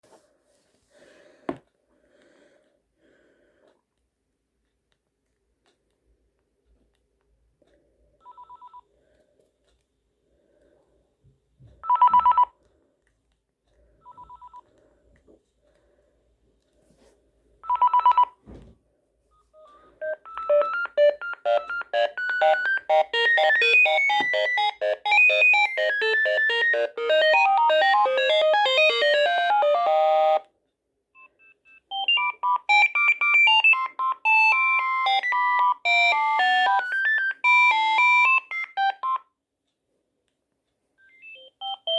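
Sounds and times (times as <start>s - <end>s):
phone ringtone melody: 11.8s - 12.5s, 17.6s - 18.3s, 19.6s - 30.4s, 31.8s - 39.3s, 41.0s - 41.9s.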